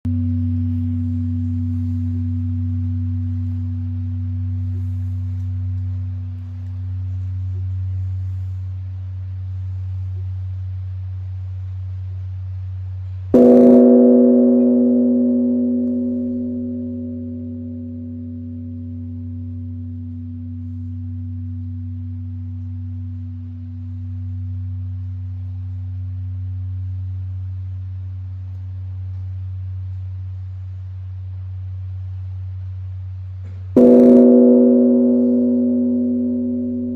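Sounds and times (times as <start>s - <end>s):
deep bell hum: 0.0s - 10.1s, 13.3s - 27.6s, 33.8s - 36.9s
large temple bell ringing: 13.4s - 24.4s, 33.8s - 36.9s.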